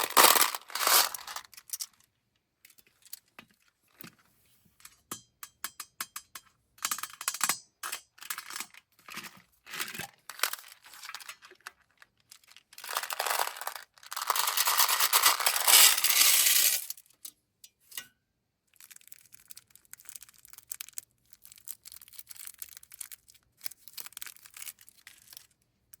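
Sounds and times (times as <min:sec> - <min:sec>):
candies clattering on hard surface: 0:00.0 - 0:01.9, 0:08.4 - 0:17.0.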